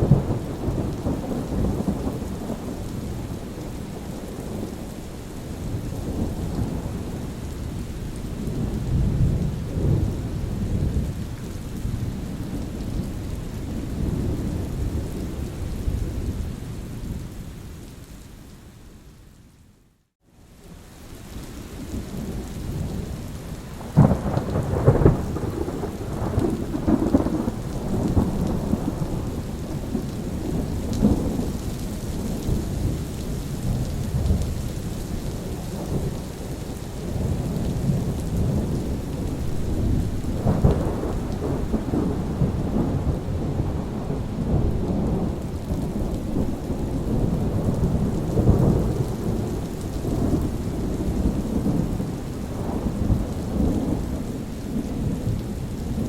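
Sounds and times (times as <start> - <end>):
thunder rumbling: 0.0 - 4.8, 22.7 - 56.0
steady rain: 0.0 - 56.0
sharp thunderclap: 37.2 - 54.2.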